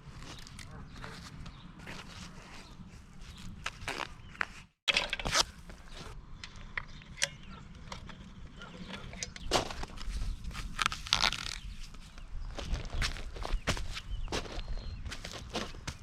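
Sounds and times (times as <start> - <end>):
hand work clicks and scrapes: 4.9 - 11.7.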